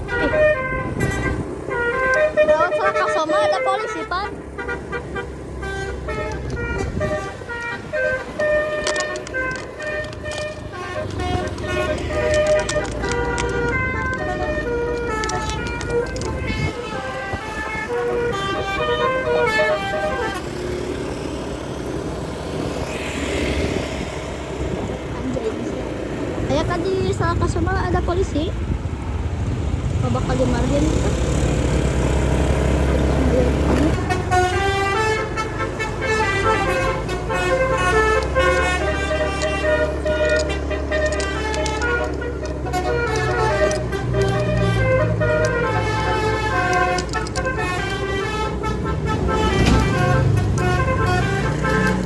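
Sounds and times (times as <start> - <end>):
minibus horn playing melody: 0.0 - 21.2, 32.2 - 52.0
road noise: 0.0 - 52.0
vehicle engine: 0.0 - 52.0.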